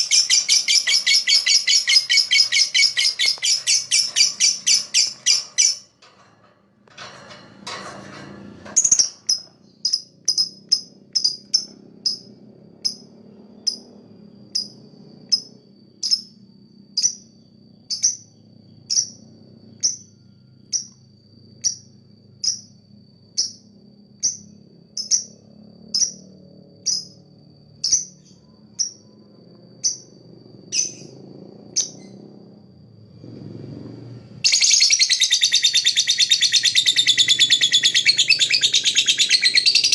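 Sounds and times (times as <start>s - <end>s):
lovebird chirping: 0.0s - 5.9s, 8.8s - 13.0s, 34.4s - 39.9s.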